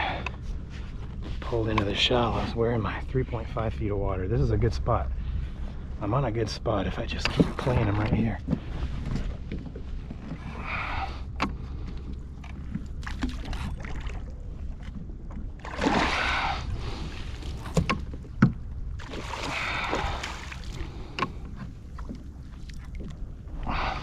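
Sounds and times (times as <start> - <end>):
low rumble: 0.0 - 24.0
water sloshing around kayak: 6.8 - 24.0.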